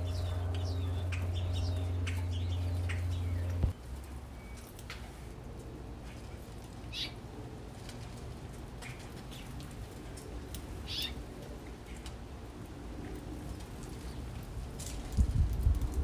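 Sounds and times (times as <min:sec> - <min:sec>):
small birds chirping: 0:00.0 - 0:05.1, 0:06.0 - 0:07.2, 0:08.8 - 0:09.8, 0:10.5 - 0:12.0
steady low hum: 0:00.0 - 0:14.2.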